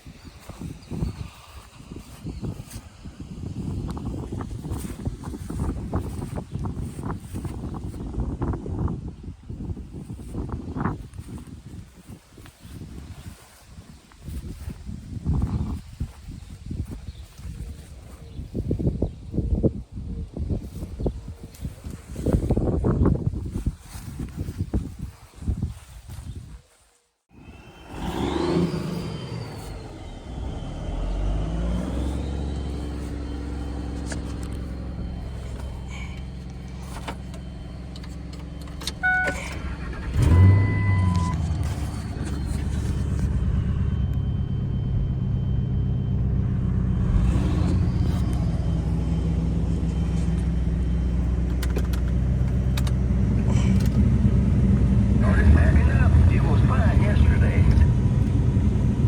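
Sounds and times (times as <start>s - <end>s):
truck engine starting and idling: 0.3s - 9.1s, 27.3s - 59.0s
short electronic beeps: 39.0s - 46.4s.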